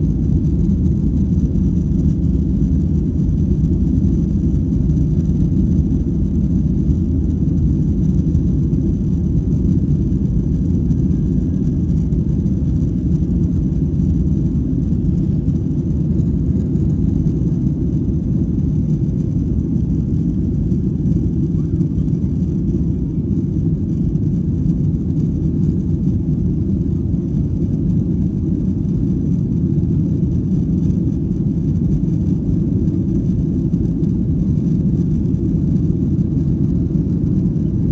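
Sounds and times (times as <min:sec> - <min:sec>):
airliner cabin engine roar: 0:00.0 - 0:37.9.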